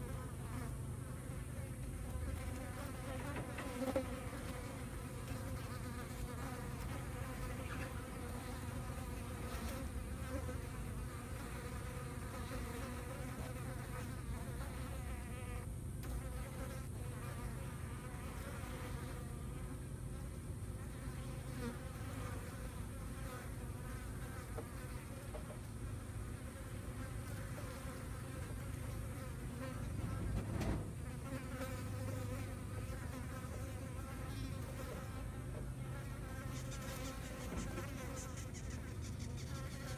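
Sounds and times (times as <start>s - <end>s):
flies buzzing: 0.0s - 39.9s
brief knock: 30.0s - 31.0s.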